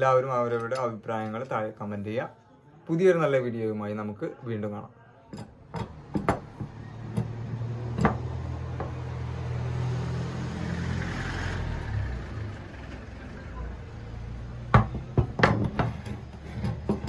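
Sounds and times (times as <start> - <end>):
sharp knocks: 14.7 - 16.1.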